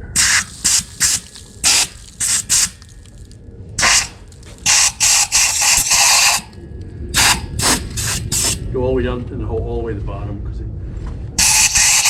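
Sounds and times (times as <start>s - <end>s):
compressed air blow gun hissing: 0.0s - 3.2s, 3.8s - 6.6s, 7.2s - 8.6s, 11.4s - 12.0s.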